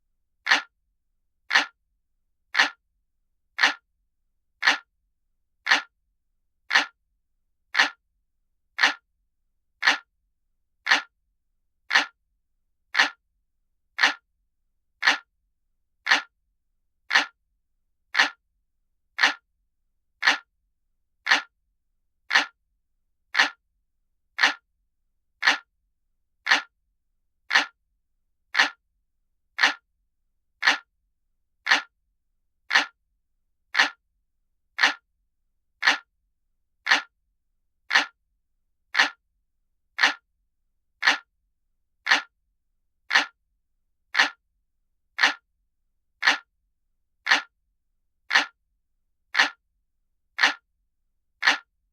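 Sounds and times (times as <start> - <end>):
clock ticking: 0.5 - 0.7, 1.5 - 1.8, 2.6 - 2.8, 3.6 - 3.8, 4.6 - 4.9, 5.7 - 5.9, 6.7 - 7.0, 7.8 - 8.0, 8.8 - 9.0, 9.8 - 10.1, 10.9 - 11.1, 11.9 - 12.2, 13.0 - 13.2, 14.0 - 14.2, 15.0 - 15.3, 16.1 - 16.3, 17.1 - 17.4, 18.2 - 18.4, 19.2 - 19.4, 20.2 - 20.5, 21.3 - 21.5, 22.3 - 22.6, 23.4 - 23.6, 24.4 - 24.6, 25.4 - 25.7, 26.5 - 26.7, 27.5 - 27.8, 28.6 - 28.8, 29.6 - 29.8, 30.6 - 30.9, 31.7 - 31.9, 32.7 - 33.0, 33.7 - 34.0, 34.8 - 35.0, 35.8 - 36.1, 36.8 - 37.1, 37.9 - 38.2, 38.9 - 39.2, 40.0 - 40.2, 41.0 - 41.3, 42.0 - 42.3, 43.1 - 43.4, 44.1 - 44.4, 45.2 - 45.4, 46.2 - 46.5, 47.2 - 47.5, 48.3 - 48.6, 49.3 - 49.6, 50.4 - 50.6, 51.4 - 51.7.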